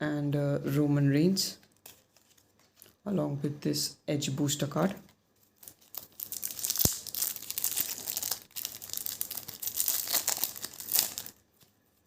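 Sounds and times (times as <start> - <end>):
wrapper crinkling and tearing: 1.7 - 3.0, 5.4 - 11.8.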